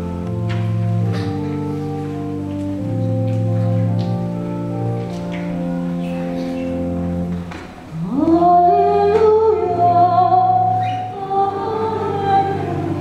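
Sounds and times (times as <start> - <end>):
church organ: 0.0 - 13.0
voices singing a hymn: 7.9 - 13.0.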